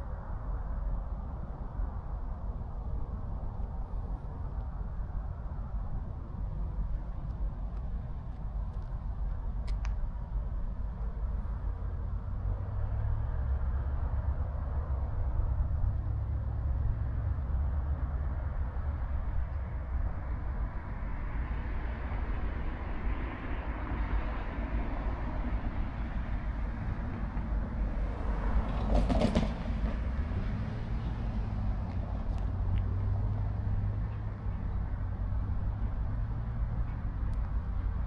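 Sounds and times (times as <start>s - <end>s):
freight train rumbling: 2.5s - 38.0s
train wheels clattering: 28.0s - 31.6s.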